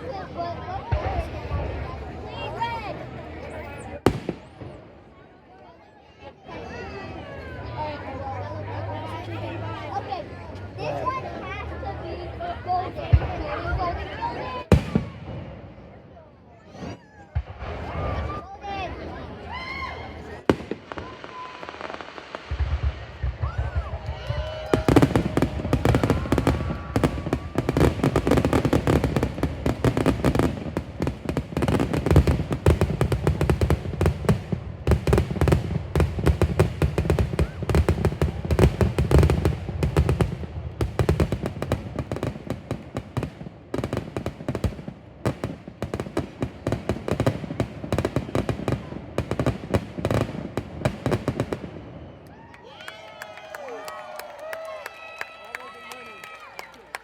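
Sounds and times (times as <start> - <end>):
firework bangs: 4.0 - 5.0, 13.0 - 16.0, 16.7 - 18.4, 20.0 - 52.1.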